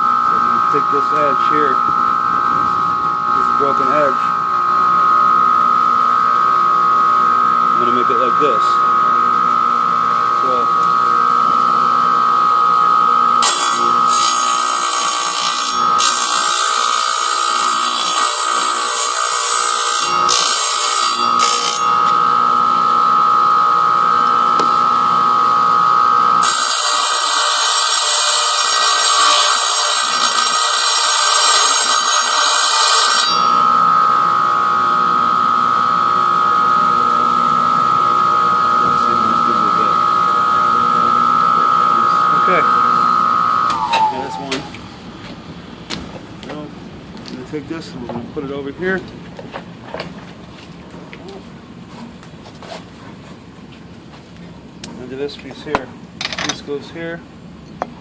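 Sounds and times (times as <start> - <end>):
grinder motor whine: 0.0 - 52.4
glass being ground: 26.4 - 33.8.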